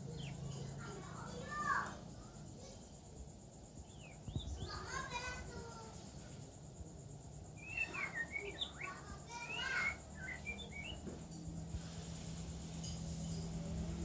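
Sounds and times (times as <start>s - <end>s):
young songbird twittering: 3.7s - 5.1s, 6.7s - 11.3s.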